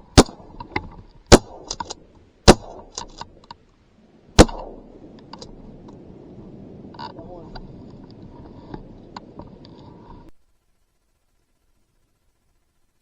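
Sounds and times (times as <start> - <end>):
shotgun shots: 0.1 - 0.6, 1.3 - 3.2, 4.4 - 5.0.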